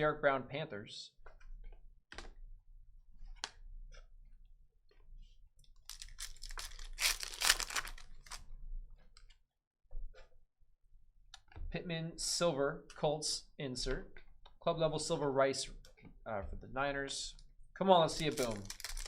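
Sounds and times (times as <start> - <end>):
wrapper crinkling and tearing: 5.9 - 8.4, 18.1 - 19.0.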